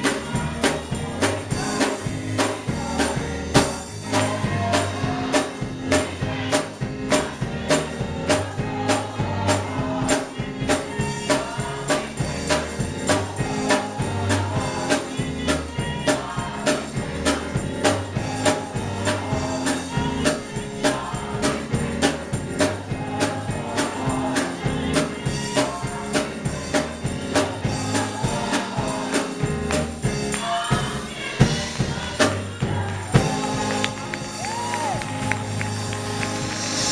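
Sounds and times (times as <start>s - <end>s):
band playing gospel music: 0.0s - 36.9s
choir singing: 0.0s - 36.9s
sharp percussion beat: 0.0s - 36.9s.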